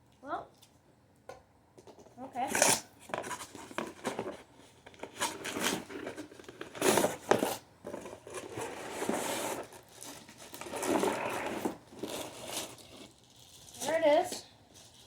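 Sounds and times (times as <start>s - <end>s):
cardboard box rustling and scraping: 2.6s - 13.1s.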